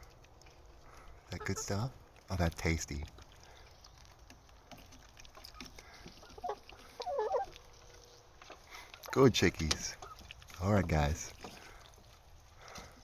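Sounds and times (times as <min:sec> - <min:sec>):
chickens clucking: 0:01.0 - 0:02.0, 0:03.6 - 0:12.1.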